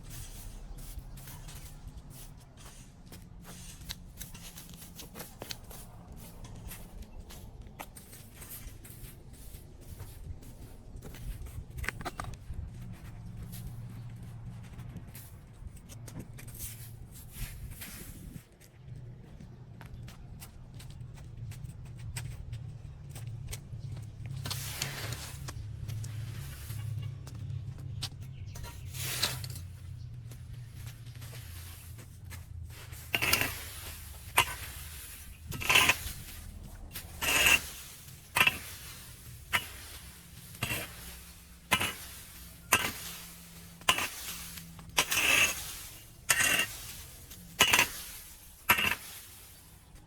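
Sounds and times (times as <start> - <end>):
metal tool striking debris: 37.0 - 49.1.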